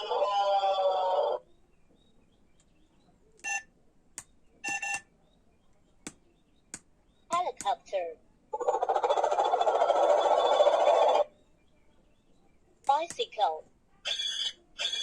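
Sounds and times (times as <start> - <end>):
short electronic beeps: 3.4 - 3.7, 4.6 - 5.0.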